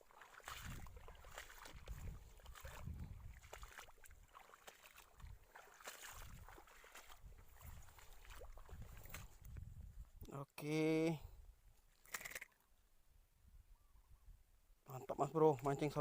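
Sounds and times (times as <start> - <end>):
water lapping against kayak hull: 0.0 - 9.8.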